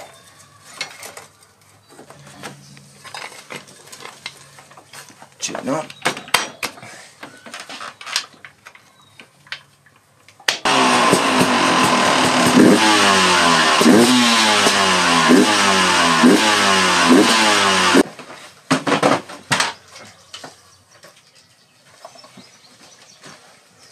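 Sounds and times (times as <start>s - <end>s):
dirt bike engine revving: 10.6s - 18.1s.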